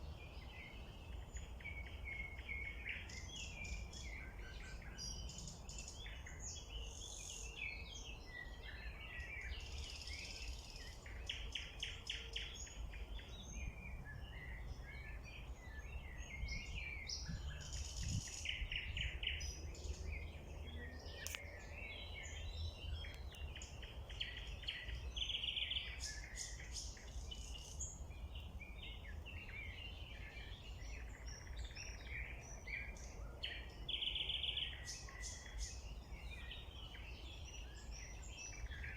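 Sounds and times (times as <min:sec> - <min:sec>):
songbirds singing: 0:00.0 - 0:38.9.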